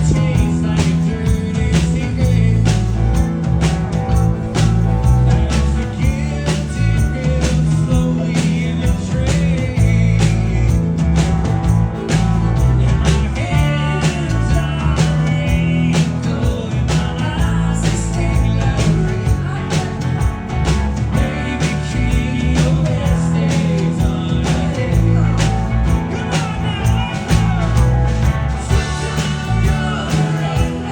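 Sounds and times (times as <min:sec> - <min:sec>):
drum beat: 0:00.0 - 0:30.9
rock band playing live: 0:00.0 - 0:30.9.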